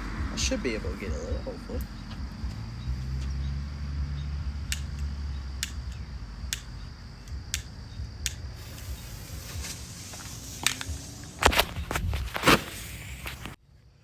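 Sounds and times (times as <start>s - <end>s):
fuse hissing: 4.6s - 13.6s
roman candle firing cracks: 7.5s - 13.6s.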